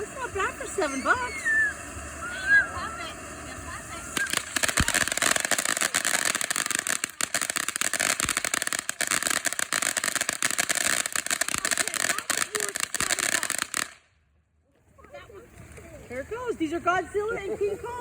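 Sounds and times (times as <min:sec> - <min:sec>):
firework sparks crackling and hissing: 0:00.0 - 0:14.1.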